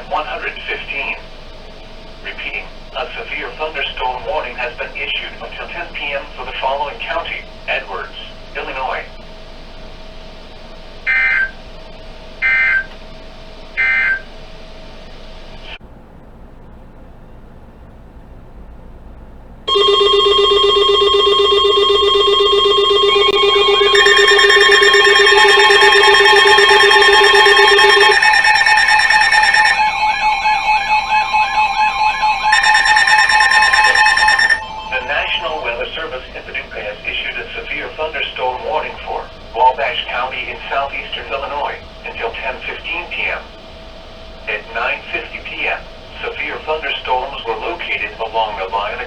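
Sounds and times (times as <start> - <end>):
faint steady hum: 0.0 - 49.0
digital data tone bursts: 19.7 - 36.3
rising chirps: 21.0 - 35.8.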